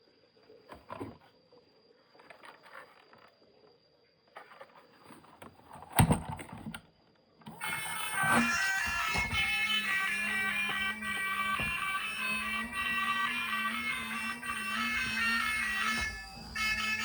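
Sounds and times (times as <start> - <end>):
music: 8.0 - 17.0.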